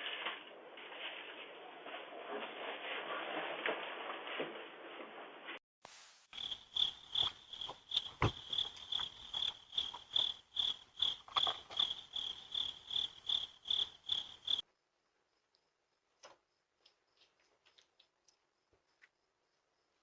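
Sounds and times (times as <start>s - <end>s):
cricket chirping: 6.3s - 20.0s.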